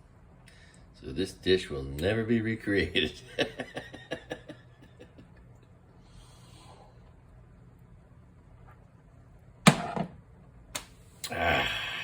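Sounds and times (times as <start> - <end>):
low steady hum: 0.0 - 12.0
faint breath-like hiss: 6.0 - 7.0.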